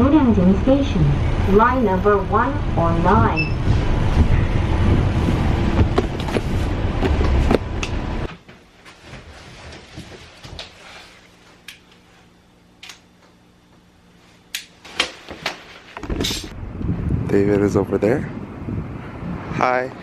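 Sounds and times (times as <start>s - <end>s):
bus engine rumbling: 0.0s - 8.3s.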